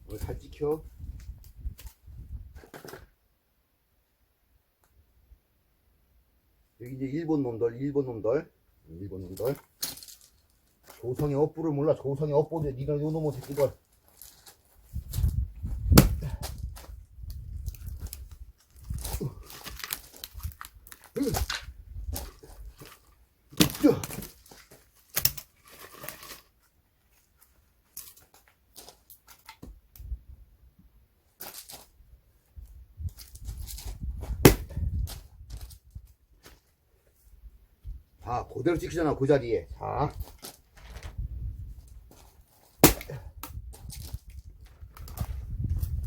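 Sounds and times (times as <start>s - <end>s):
axe splitting logs: 15.8s - 16.6s, 21.1s - 24.4s, 25.1s - 26.2s, 34.3s - 34.9s, 42.8s - 43.6s.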